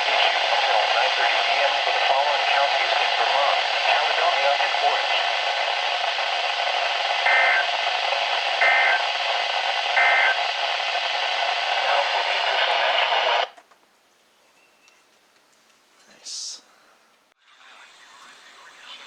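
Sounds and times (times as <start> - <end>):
radio static hiss: 0.0 - 13.6, 17.4 - 19.0.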